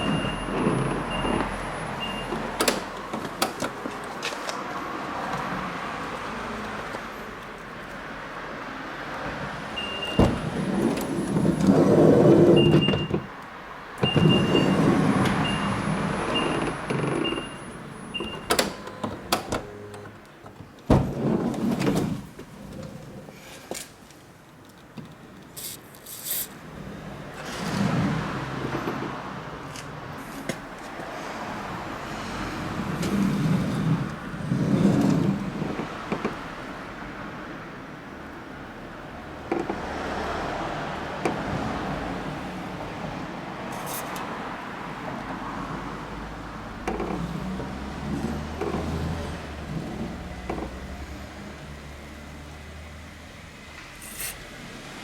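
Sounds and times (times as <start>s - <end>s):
sliding door running on track: 0.0s - 3.5s, 9.8s - 13.3s, 14.0s - 19.7s, 20.9s - 23.3s, 32.8s - 36.4s
door creaking: 9.8s - 13.4s, 14.0s - 22.2s.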